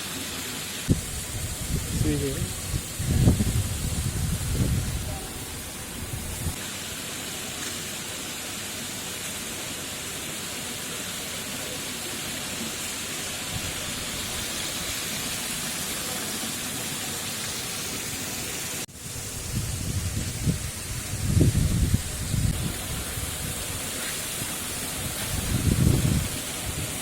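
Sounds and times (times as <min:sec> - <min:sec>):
steady rushing noise: 0:00.8 - 0:06.6, 0:18.0 - 0:27.0.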